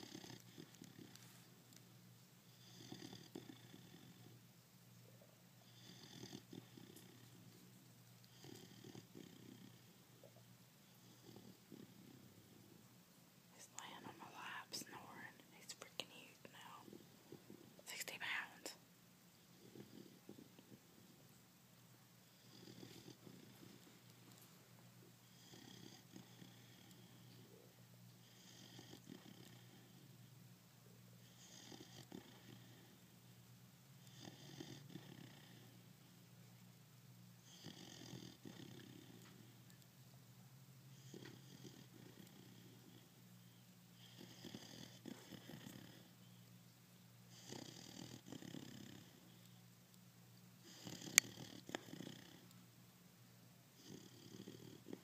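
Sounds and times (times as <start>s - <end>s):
puppy snoring: 0.0s - 1.5s, 2.4s - 4.5s, 5.6s - 12.8s, 19.4s - 21.2s, 22.2s - 24.5s, 25.2s - 30.4s, 31.2s - 33.3s, 34.0s - 36.2s, 37.4s - 39.8s, 40.9s - 46.2s, 47.3s - 49.7s, 50.6s - 52.6s, 53.8s - 55.0s.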